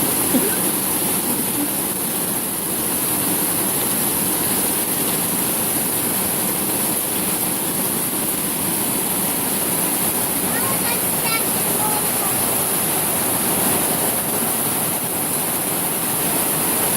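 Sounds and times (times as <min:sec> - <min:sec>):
heavy rain pouring: 0:00.0 - 0:16.9.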